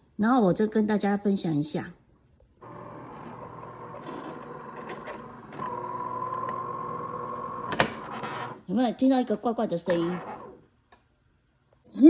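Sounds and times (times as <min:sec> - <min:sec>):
coffee machine motor whine: 0:02.6 - 0:08.6, 0:09.9 - 0:10.6.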